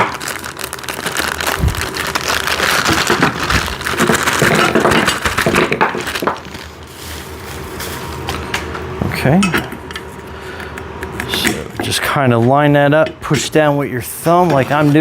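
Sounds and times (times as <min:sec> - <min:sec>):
plastic bag tearing and crinkling: 0:00.0 - 0:08.7.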